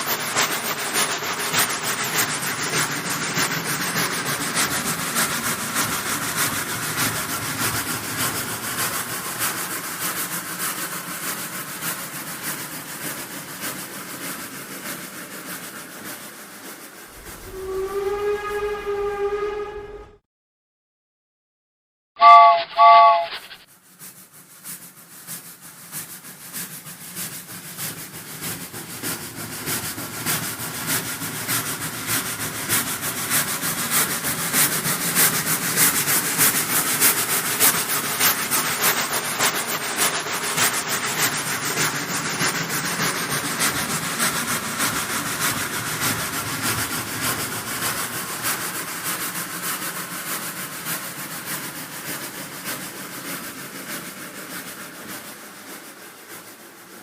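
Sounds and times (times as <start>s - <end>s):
locomotive chuffing: 0.0s - 20.1s, 22.3s - 57.0s
steam locomotive whistle: 17.1s - 20.2s, 22.2s - 23.6s
rail clatter: 27.1s - 57.0s.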